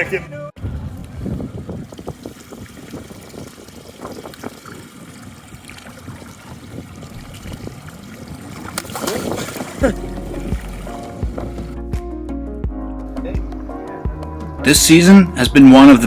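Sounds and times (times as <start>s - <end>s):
water splashing beside a boat: 0.6s - 11.8s.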